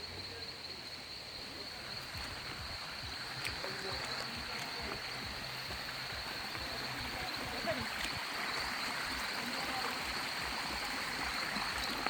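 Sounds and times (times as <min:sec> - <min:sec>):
spring water running: 0:01.7 - 0:12.0.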